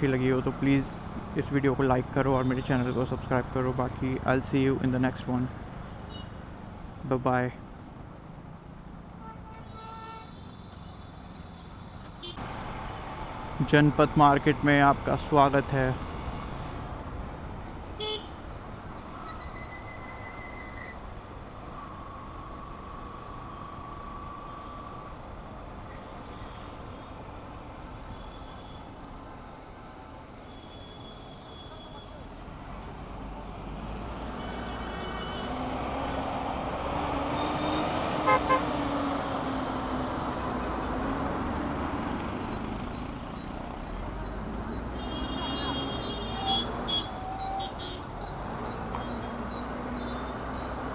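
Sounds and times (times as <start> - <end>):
street traffic hum: 0.0 - 50.9
vehicle horns: 5.9 - 6.4, 9.2 - 12.4, 18.0 - 18.4, 30.5 - 32.3, 34.3 - 36.2, 37.3 - 38.8, 44.8 - 50.4
vehicle horn beeps: 18.0 - 18.3, 34.4 - 35.6, 37.6 - 38.7, 44.8 - 48.3.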